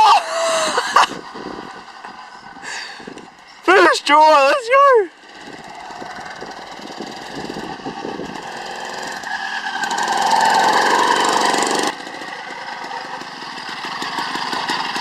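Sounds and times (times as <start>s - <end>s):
two-stroke engine revving: 5.1s - 15.0s.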